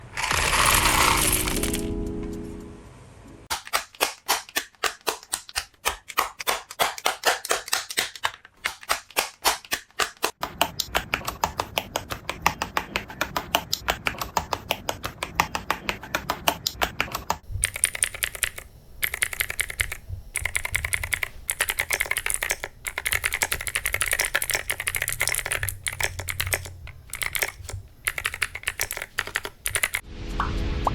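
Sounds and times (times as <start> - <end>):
clicky mechanical keyboard typing: 0.0 - 2.0, 10.6 - 30.0.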